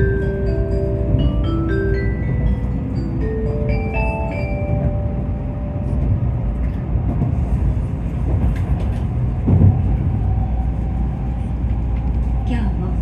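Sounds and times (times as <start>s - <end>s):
onboard chime: 0.0s - 6.1s
train rumble inside car: 0.0s - 13.0s.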